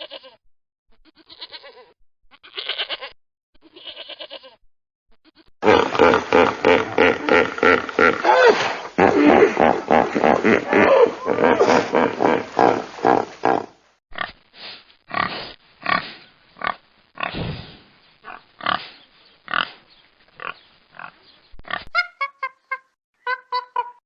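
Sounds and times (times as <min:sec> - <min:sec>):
rapid repeated animal sounds: 0:05.4 - 0:14.4
pig grunting: 0:05.6 - 0:14.3.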